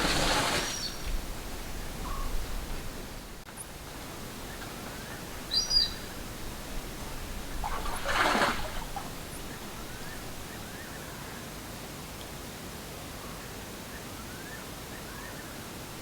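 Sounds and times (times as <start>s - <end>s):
steady outdoor hiss: 0.0s - 16.0s
high bird chirp: 5.5s - 6.0s.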